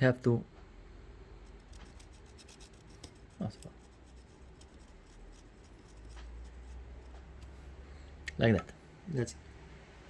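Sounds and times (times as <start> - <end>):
pencil scratching on circuit board: 1.5 - 7.2.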